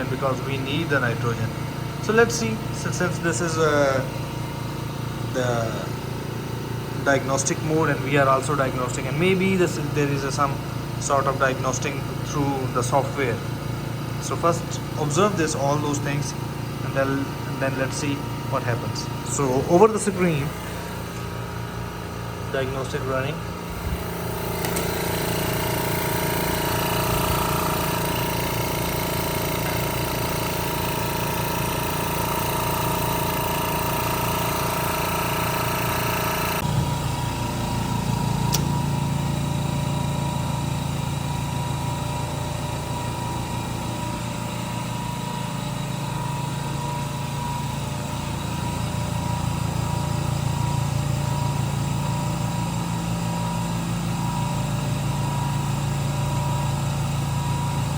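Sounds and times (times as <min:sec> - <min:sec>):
air compressors humming: 0:00.0 - 0:57.9
click: 0:24.6 - 0:25.0, 0:38.5 - 0:38.8.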